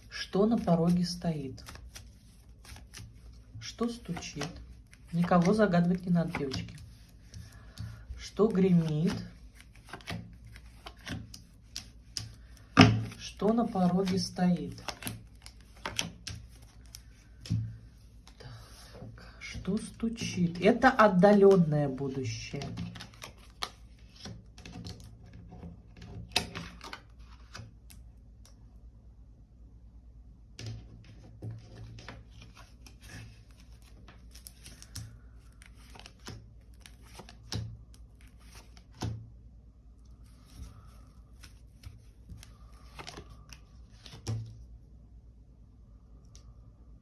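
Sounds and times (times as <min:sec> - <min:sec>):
cards tapping and rustling on table: 0:02.6 - 0:08.1, 0:08.7 - 0:17.8.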